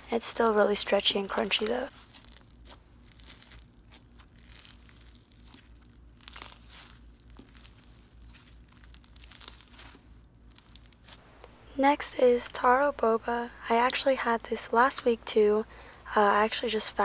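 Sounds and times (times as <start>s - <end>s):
slime crackling as squished: 0.1s - 11.3s.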